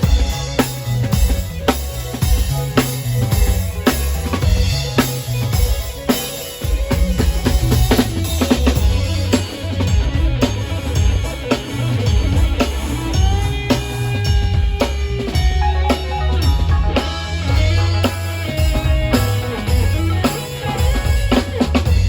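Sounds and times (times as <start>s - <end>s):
bass line: 0.0s - 22.0s
drum kit beat: 0.0s - 22.0s.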